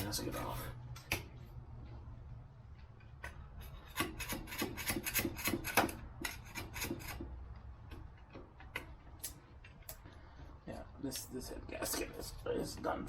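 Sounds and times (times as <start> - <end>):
scraper rasping on metal: 3.6 - 7.3.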